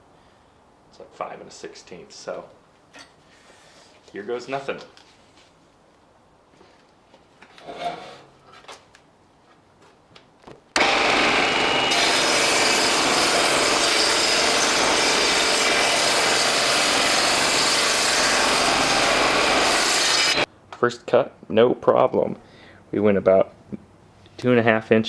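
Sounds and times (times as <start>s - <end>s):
faint handling sounds: 2.8s - 7.6s
table saw ripping wood: 10.8s - 20.5s.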